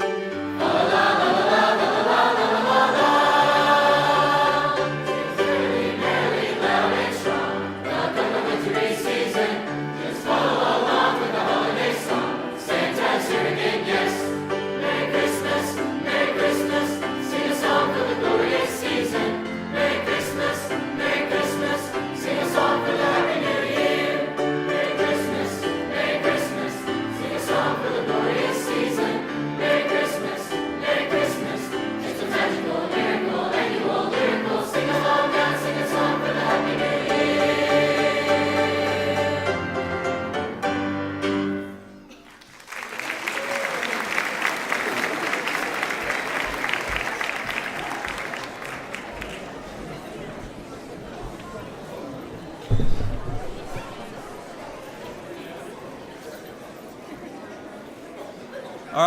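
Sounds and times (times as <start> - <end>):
choir singing: 0.0 - 41.9.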